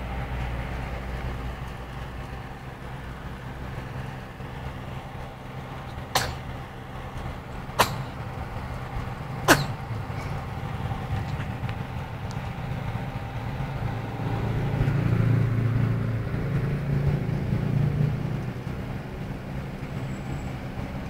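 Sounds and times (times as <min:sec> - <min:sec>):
low background rumble: 0:00.0 - 0:21.0
baby hiccupping: 0:07.8 - 0:08.2, 0:09.5 - 0:09.8.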